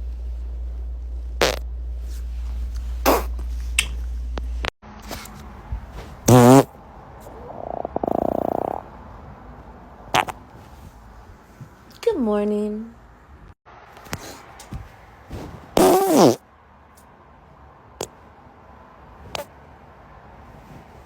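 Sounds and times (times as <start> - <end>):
steady low hum: 0.0 - 4.7, 5.5 - 11.9
person passing gas: 3.0 - 3.3, 6.3 - 6.7, 7.3 - 8.9, 15.8 - 16.4.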